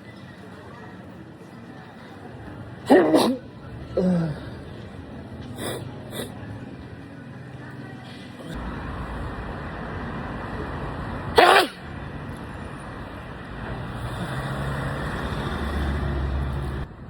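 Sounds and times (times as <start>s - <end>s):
steady background noise: 0.0s - 17.0s
person sneezing: 2.9s - 3.4s, 11.4s - 11.8s.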